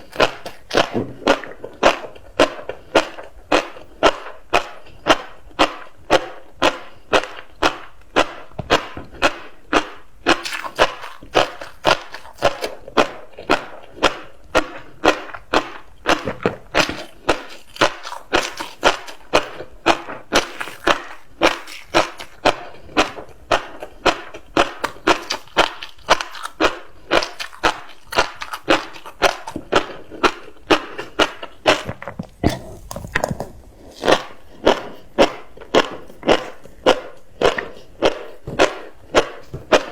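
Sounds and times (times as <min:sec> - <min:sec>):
fish roe crunching when chewed: 0:00.0 - 0:39.9.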